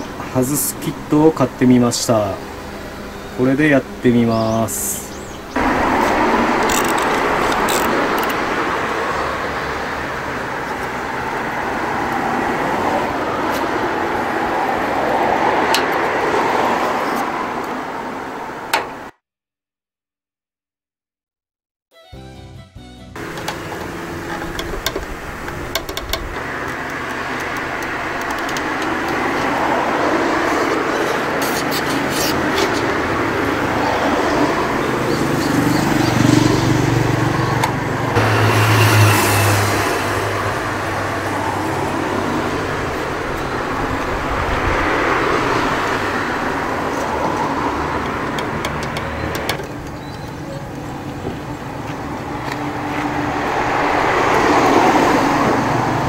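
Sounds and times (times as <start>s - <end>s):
louder low-pitched vehicle: 0.0s - 19.1s, 23.2s - 56.0s
vehicles passing: 0.0s - 19.1s, 23.2s - 56.0s
sharp clicks: 23.2s - 29.3s.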